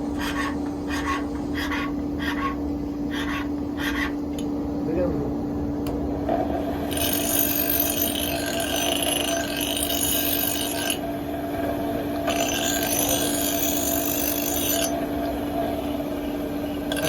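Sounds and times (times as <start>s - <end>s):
steady machine hum: 0.0s - 17.0s
metal rasping: 0.1s - 4.2s, 6.8s - 11.0s, 12.3s - 15.0s.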